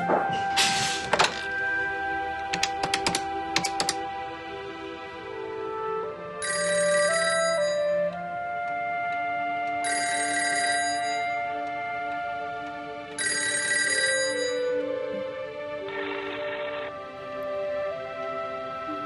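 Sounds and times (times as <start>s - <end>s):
background music: 0.0s - 19.0s
sharp clicks: 2.5s - 4.0s
telephone ringing: 6.4s - 8.0s, 9.8s - 11.6s, 13.2s - 14.9s.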